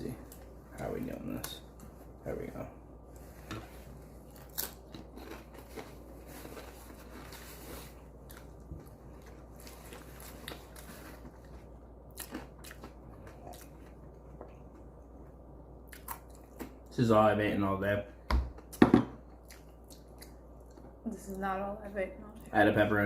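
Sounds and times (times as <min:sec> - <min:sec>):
chewing crunchy tortilla: 0:03.4 - 0:16.9, 0:18.6 - 0:21.0.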